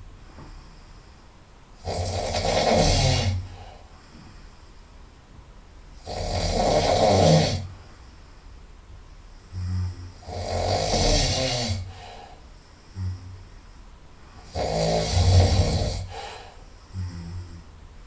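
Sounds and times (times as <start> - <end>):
loud nasal snoring: 1.8 - 3.8, 6.0 - 7.8, 9.5 - 13.4, 14.4 - 17.7.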